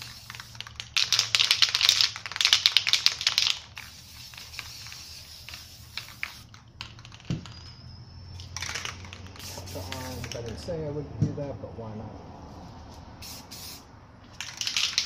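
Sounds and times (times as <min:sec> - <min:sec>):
spray can mixing ball rattling: 0:00.0 - 0:07.7, 0:08.4 - 0:10.6, 0:13.2 - 0:15.0.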